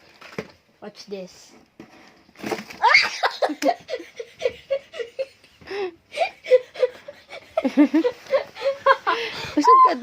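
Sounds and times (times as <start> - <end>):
children laughing: 2.8 - 10.0.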